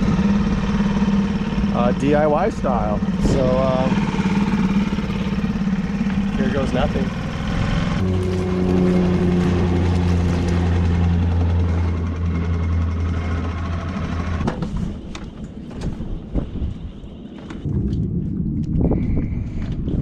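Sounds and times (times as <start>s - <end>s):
water noise: 0.0s - 14.3s
small outboard motor running: 0.0s - 14.6s
wind: 0.0s - 20.0s.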